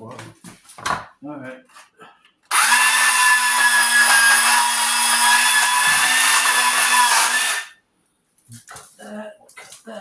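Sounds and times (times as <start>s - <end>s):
wire stripping machine whine: 2.5s - 7.7s.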